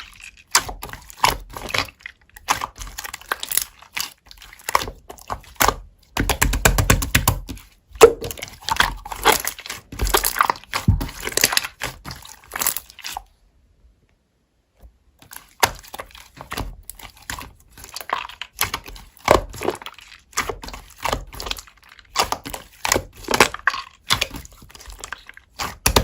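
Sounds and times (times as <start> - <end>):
slime squished by hand: 0.0 - 13.3, 15.3 - 26.0.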